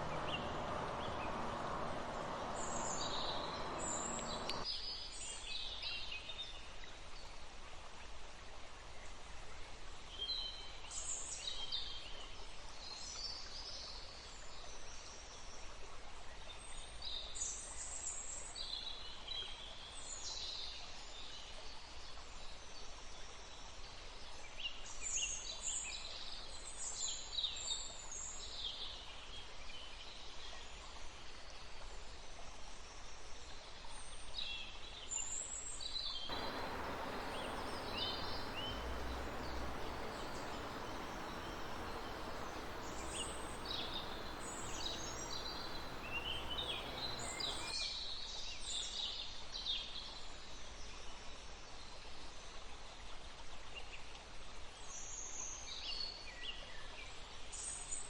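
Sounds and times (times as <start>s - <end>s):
birds chirping: 0.0s - 4.6s, 36.3s - 47.7s
running water rushing: 0.0s - 4.6s, 36.3s - 47.7s.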